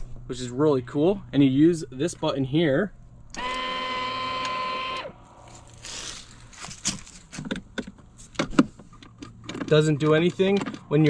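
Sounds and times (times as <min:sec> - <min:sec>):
electric motor whirring: 0:03.3 - 0:06.4.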